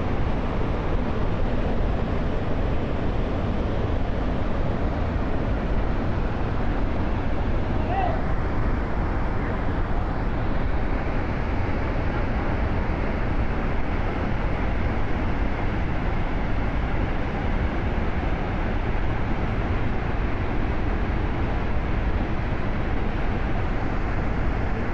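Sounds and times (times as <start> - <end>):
large waterfall rushing: 0.0 - 24.9.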